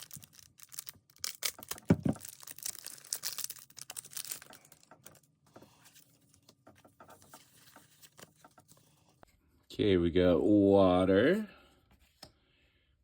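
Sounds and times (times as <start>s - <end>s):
foil wrapper tearing and crinkling: 0.0s - 4.9s.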